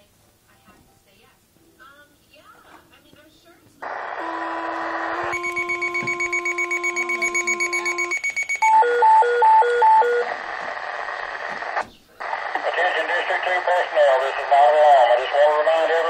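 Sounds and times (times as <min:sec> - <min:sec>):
two-tone paging tones: 0:04.2 - 0:10.3
high-low alternating alert tone: 0:05.2 - 0:10.2
pager pulsing alert beep: 0:05.2 - 0:10.2
radio channel hiss: 0:10.3 - 0:16.0.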